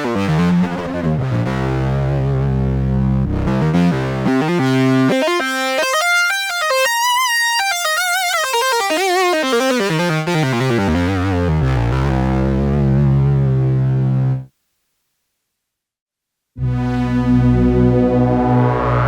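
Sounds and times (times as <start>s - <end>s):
buzzy synthesizer tone: 0.2s - 5.1s, 16.6s - 19.0s.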